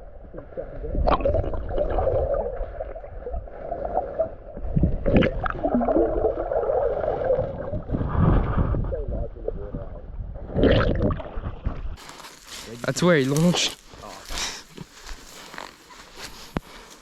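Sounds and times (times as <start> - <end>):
creek water gurgling: 0.0 - 9.0.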